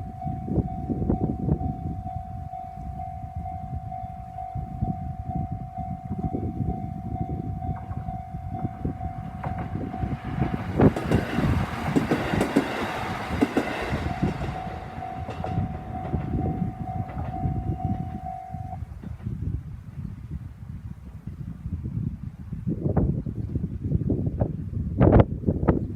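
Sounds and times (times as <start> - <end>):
level crossing bell ringing: 0.0 - 10.3, 14.0 - 18.8
train rumble: 0.0 - 20.0
wheels clicking over rail joints: 8.6 - 19.4.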